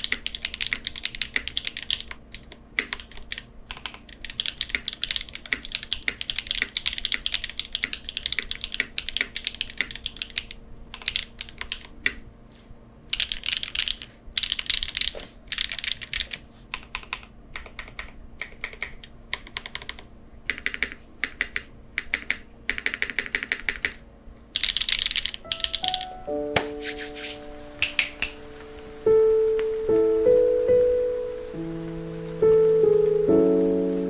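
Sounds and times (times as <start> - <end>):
mechanical keyboard typing: 0.0 - 12.2, 13.1 - 26.7
faint steady hum: 27.4 - 34.0.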